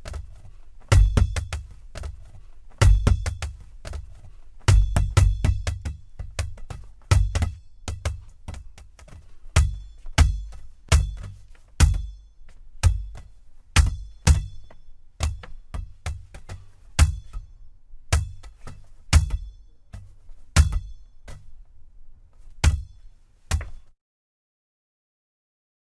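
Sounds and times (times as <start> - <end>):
basketball bouncing on hard court: 0.9 - 2.2, 4.7 - 17.5, 18.1 - 21.4, 23.5 - 23.8.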